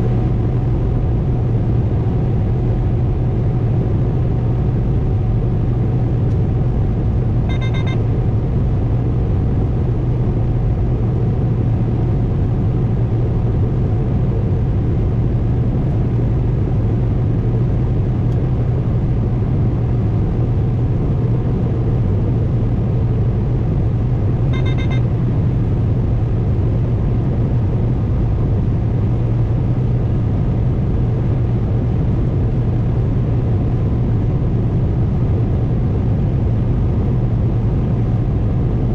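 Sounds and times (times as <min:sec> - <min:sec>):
short electronic beep: 0:07.5 - 0:08.0, 0:24.5 - 0:25.1.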